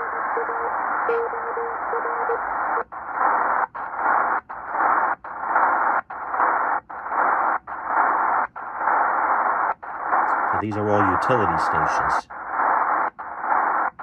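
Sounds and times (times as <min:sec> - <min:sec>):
morse code beeps: 0:00.0 - 0:02.8
radio band hiss: 0:00.0 - 0:12.8.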